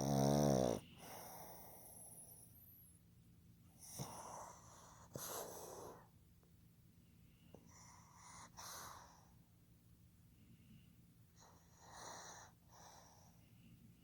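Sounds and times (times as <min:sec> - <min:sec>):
dog snoring: 0:00.0 - 0:02.8, 0:03.8 - 0:06.0, 0:11.4 - 0:13.3.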